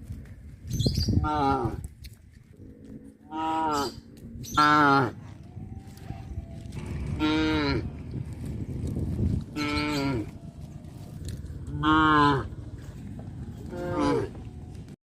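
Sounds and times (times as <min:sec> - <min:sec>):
steady low rumble: 0:00.0 - 0:15.0
cows mooing: 0:02.6 - 0:05.3, 0:06.7 - 0:08.1, 0:09.5 - 0:10.4, 0:11.5 - 0:13.0, 0:13.6 - 0:14.6.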